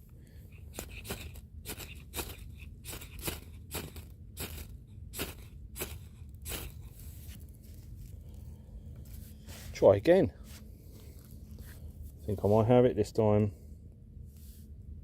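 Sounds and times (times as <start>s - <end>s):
ferro rod scraping: 0.6s - 7.9s.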